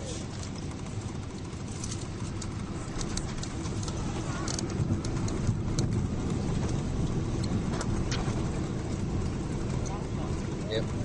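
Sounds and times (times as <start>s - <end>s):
airliner cabin rumble: 0.0s - 11.0s
light clicks and rattles: 1.4s - 10.9s.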